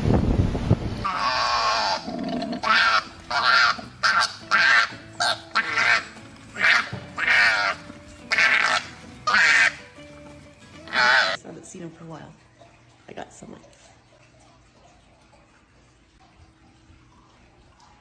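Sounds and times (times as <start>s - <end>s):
animal high cries: 1.0s - 10.0s, 10.8s - 11.4s.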